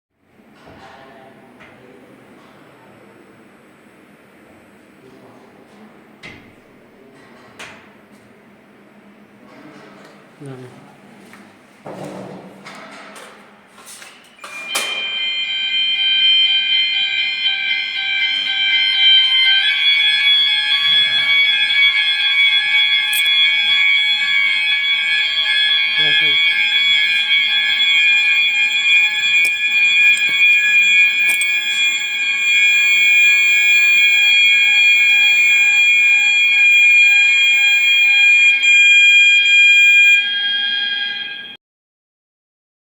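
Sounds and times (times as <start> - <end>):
fire alarm sounder ringing: 14.2 - 41.6.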